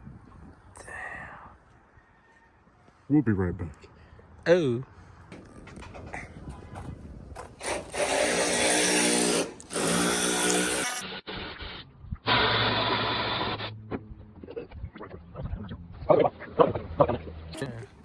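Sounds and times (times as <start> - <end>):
power drill running: 7.6 - 11.1.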